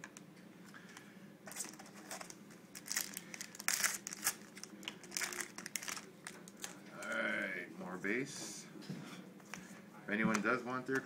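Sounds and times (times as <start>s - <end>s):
cards and wrapper crinkling: 1.5s - 7.2s.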